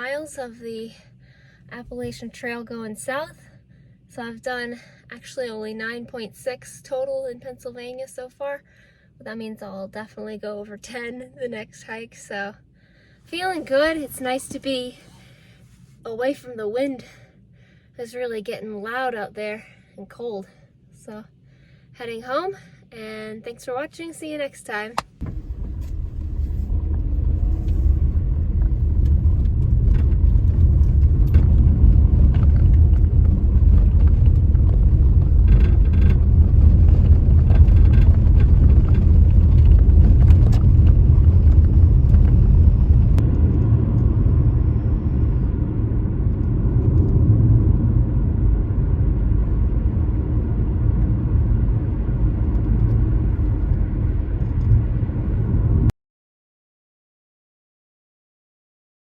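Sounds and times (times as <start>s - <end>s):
car rumble inside cabin: 25.0s - 55.9s.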